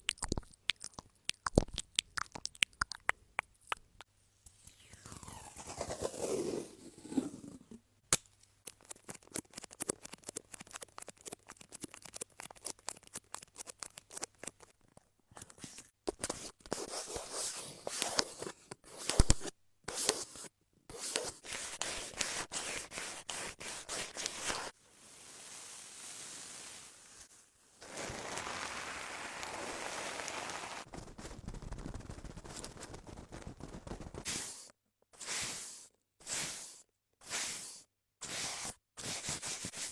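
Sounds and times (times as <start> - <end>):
crisp clicking and crackling: 0.0 - 4.1, 8.6 - 15.6, 27.8 - 34.3
scraping hiss: 23.9 - 30.9.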